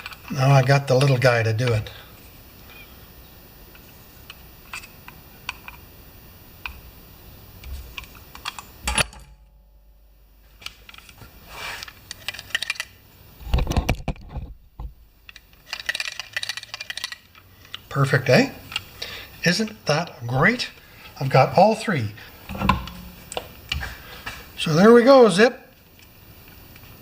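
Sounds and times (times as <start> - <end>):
metal tools clicking and clinking: 8.0 - 9.6, 11.8 - 13.0, 15.3 - 17.8.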